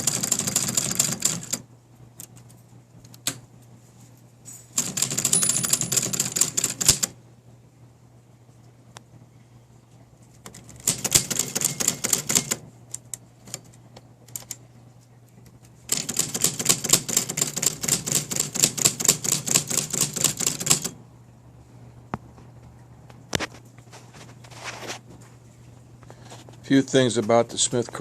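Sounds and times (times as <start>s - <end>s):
typewriter keystrokes: 0.0s - 1.6s, 4.8s - 7.2s, 10.4s - 14.6s, 15.9s - 21.0s.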